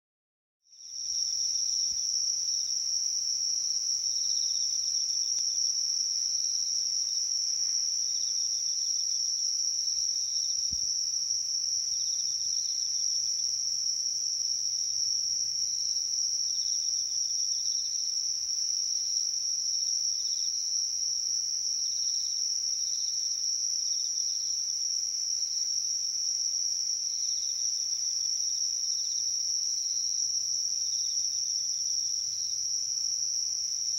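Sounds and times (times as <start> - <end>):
insect high trill: 2.5 - 13.4
insect short chirps: 3.6 - 13.1.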